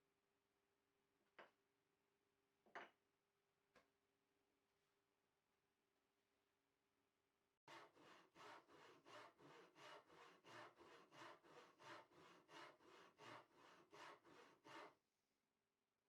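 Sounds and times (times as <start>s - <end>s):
hand saw cutting wood: 7.7s - 15.0s.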